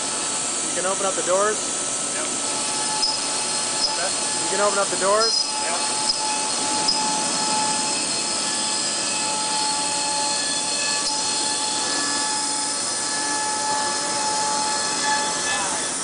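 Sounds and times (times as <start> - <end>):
machinery rushing air and whine: 0.0 - 16.0.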